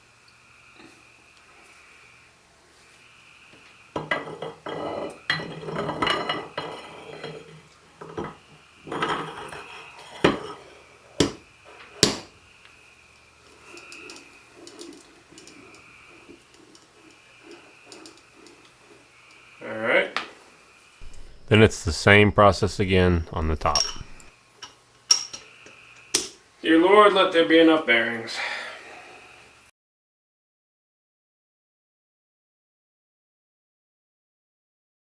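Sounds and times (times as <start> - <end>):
sharp metal clinks: 23.2 - 24.3
steel balls clinking and rattling: 23.4 - 24.3.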